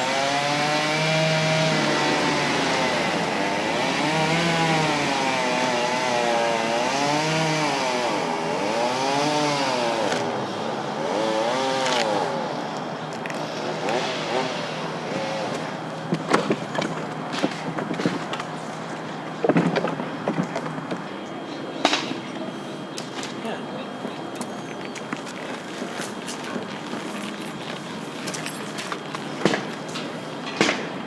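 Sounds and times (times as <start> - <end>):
small engine revving: 0.0 - 12.6, 13.3 - 15.8.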